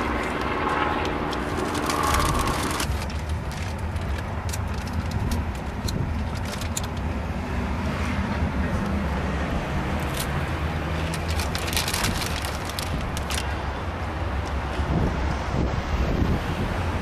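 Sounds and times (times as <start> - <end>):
engine-like tone: 0.0 - 3.2
low rumble of road traffic: 0.0 - 17.0.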